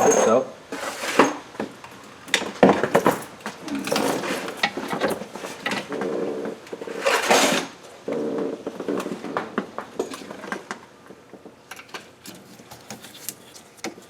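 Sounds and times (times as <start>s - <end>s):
metal tools clinking and rattling: 0.0s - 1.4s.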